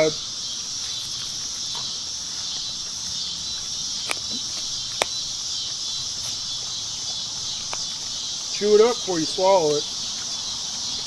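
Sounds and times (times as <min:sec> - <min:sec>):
insect chorus: 0:00.0 - 0:11.0
dog teeth crunching bone: 0:03.9 - 0:05.3.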